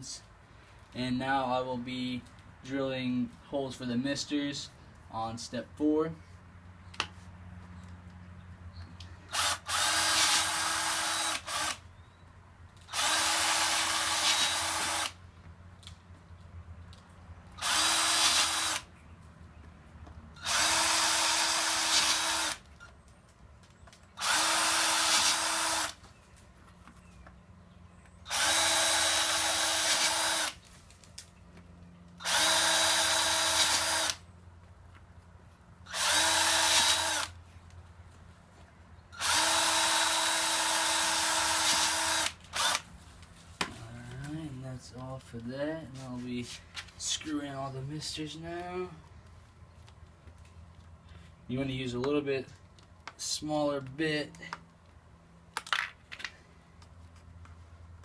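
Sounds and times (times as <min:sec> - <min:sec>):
power drill whirring: 0:09.3 - 0:11.8, 0:12.8 - 0:15.2, 0:17.6 - 0:18.9, 0:20.4 - 0:22.7, 0:24.2 - 0:26.0, 0:28.3 - 0:30.6, 0:32.2 - 0:34.2, 0:35.9 - 0:37.3, 0:39.2 - 0:42.9.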